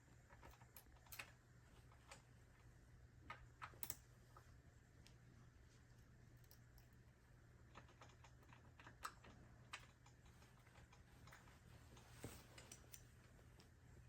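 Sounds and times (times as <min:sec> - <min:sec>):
small clicks of bike parts: 0:00.3 - 0:01.4, 0:03.3 - 0:04.1, 0:06.4 - 0:07.0.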